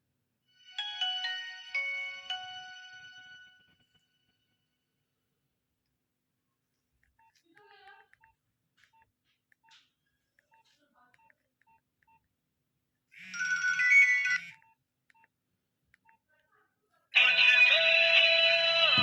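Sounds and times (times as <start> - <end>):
phone ringtone: 0.6 - 3.8, 13.2 - 14.7.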